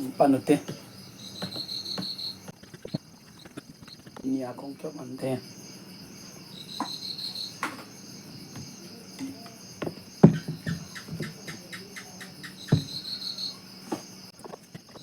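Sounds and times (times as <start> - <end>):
insects chirring: 0.0 - 15.0
sharp clicks and knocks: 8.6 - 11.6.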